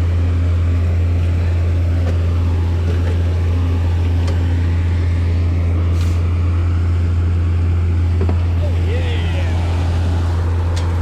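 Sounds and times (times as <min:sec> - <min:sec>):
engine running steadily: 0:00.0 - 0:11.0.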